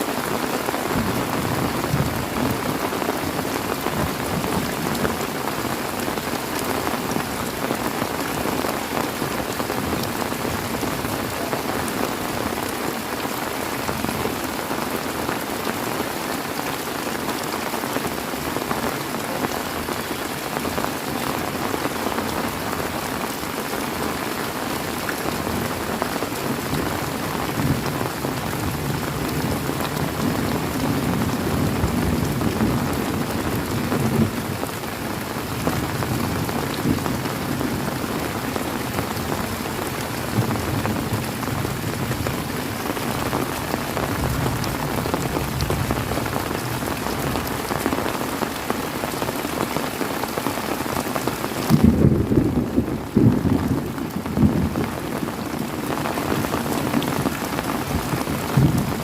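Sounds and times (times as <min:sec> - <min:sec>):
heavy rain falling: 0:00.0 - 0:59.0
thunder rumbling: 0:51.7 - 0:55.3.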